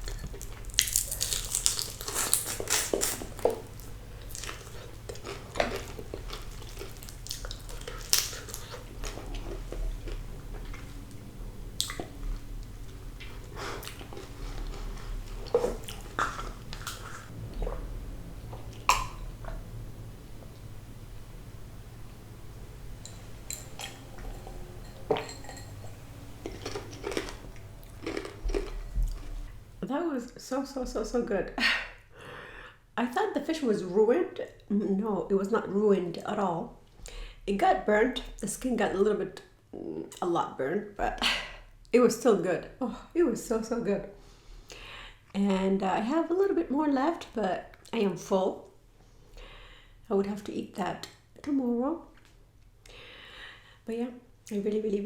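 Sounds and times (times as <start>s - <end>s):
crisp crunching bites: 0.0s - 10.3s, 26.4s - 29.5s
chewing: 0.0s - 19.6s, 23.0s - 29.7s
soft mouth sounds: 13.2s - 19.6s
dishes and utensils clinking: 23.0s - 27.5s.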